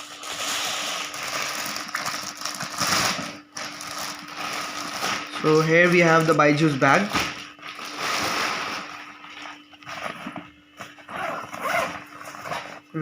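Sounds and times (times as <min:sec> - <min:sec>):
fabric bag rustling and scraping: 0:07.6 - 0:12.9.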